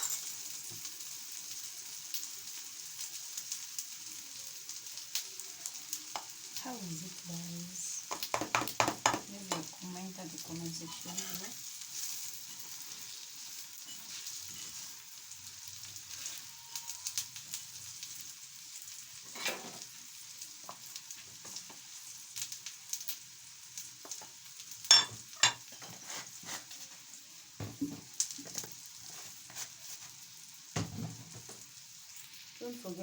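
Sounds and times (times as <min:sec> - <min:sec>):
food sizzling in oil: 0:00.0 - 0:33.0.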